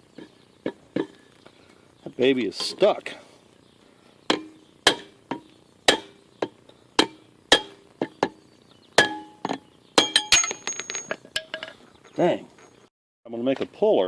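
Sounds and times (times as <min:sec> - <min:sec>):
hammer striking metal drift: 0:04.3 - 0:06.2, 0:07.0 - 0:08.4.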